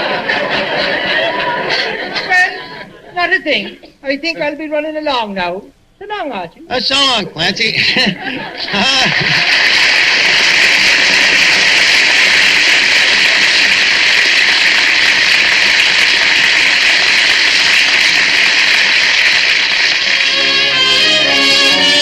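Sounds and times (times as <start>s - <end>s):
audience applauding: 0.0s - 2.8s, 7.0s - 22.0s
orchestra playing: 20.2s - 22.0s.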